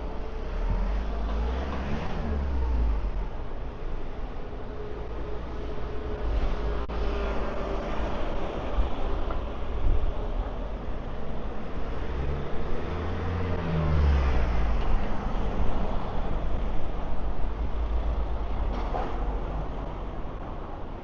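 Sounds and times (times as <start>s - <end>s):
city street noise: 0.0s - 21.0s
vehicle engine rumbling: 0.0s - 21.0s.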